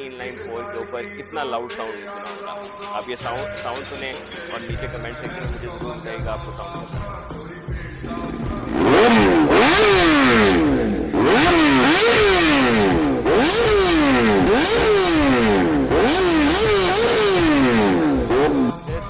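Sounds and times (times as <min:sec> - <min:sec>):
superbike engine revving: 0:08.0 - 0:19.0.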